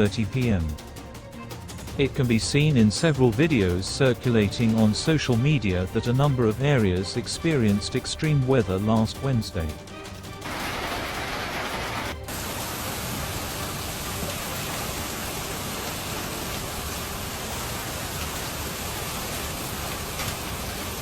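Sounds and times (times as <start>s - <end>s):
heavy rain and hail falling: 10.4s - 21.0s.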